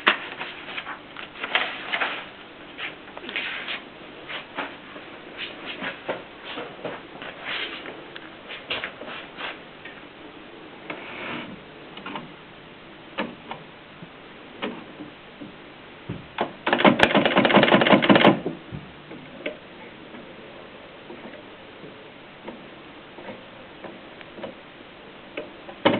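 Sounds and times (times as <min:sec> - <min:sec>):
rapid rattle of clicks: 0:16.6 - 0:18.5
typewriter clicks: 0:16.6 - 0:18.5.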